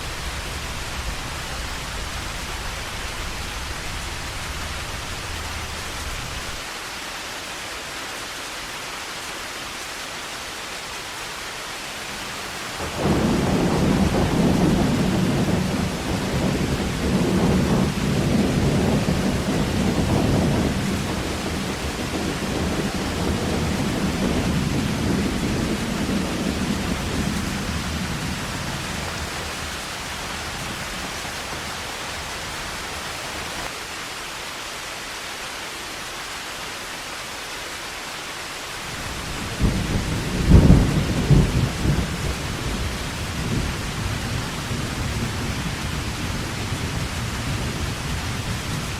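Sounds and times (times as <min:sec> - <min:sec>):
heavy rain falling: 0:00.0 - 0:48.9
thunder rumbling: 0:12.2 - 0:33.7, 0:38.9 - 0:48.9.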